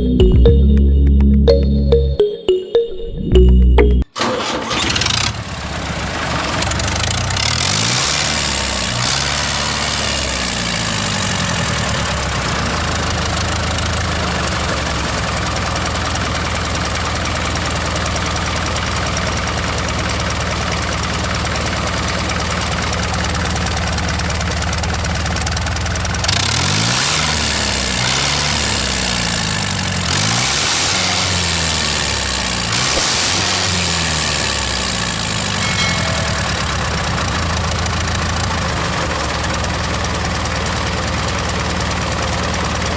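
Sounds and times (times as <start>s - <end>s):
small tractor engine idling: 11.3s - 26.3s, 34.7s - 42.9s.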